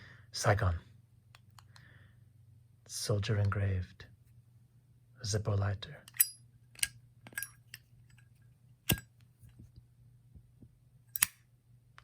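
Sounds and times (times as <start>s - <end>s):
low steady hum: 0.0s - 12.0s
metal lighter clicking: 11.2s - 11.4s.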